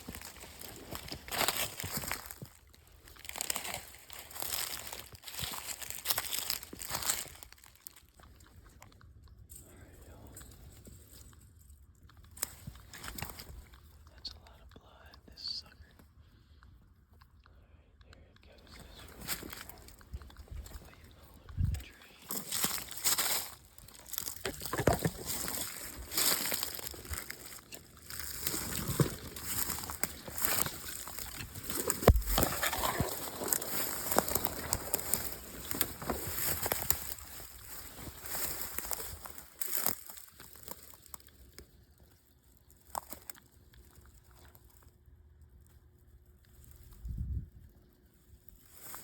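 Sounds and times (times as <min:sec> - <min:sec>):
crunching and rustling: 0:00.0 - 0:49.0
faint clicks and ticks: 0:07.2 - 0:41.6.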